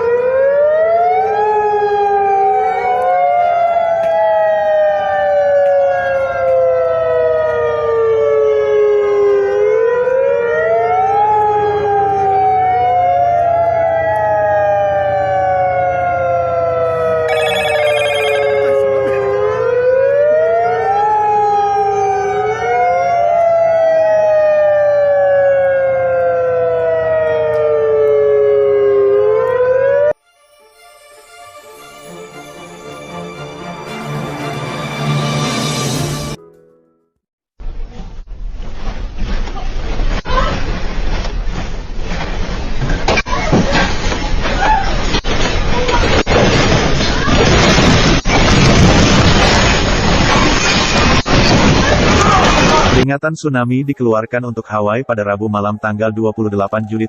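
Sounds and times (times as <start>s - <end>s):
warning siren wailing: 0.0s - 30.2s, 52.6s - 57.0s
rapid high beeps: 17.3s - 18.7s.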